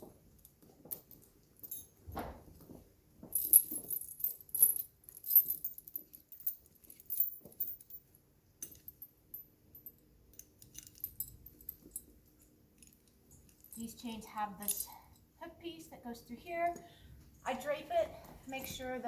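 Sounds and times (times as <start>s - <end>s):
metal tire chains clinking: 3.4s - 15.1s.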